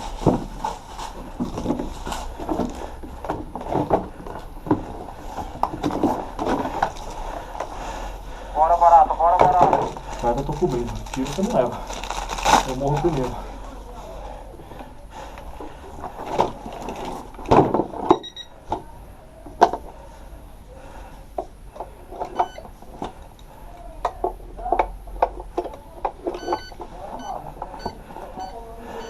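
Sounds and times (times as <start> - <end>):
short electronic beeps: 18.2 - 18.6, 22.4 - 22.6, 26.4 - 29.0.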